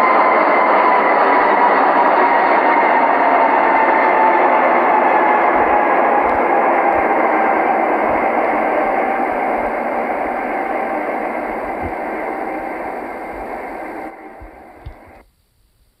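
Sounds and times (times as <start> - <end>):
faint steady tones: 0.0 - 16.0
steady rushing static noise: 3.2 - 16.0.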